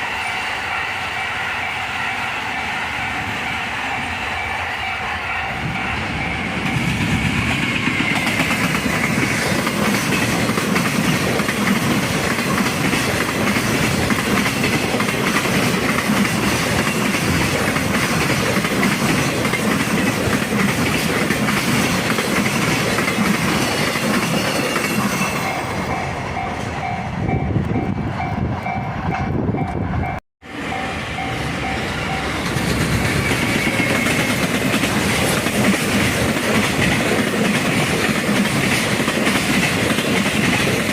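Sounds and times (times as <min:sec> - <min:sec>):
level-crossing warning bell: 0:00.0 - 0:07.4, 0:11.0 - 0:35.3
freight train rumbling on rails: 0:00.0 - 0:40.9.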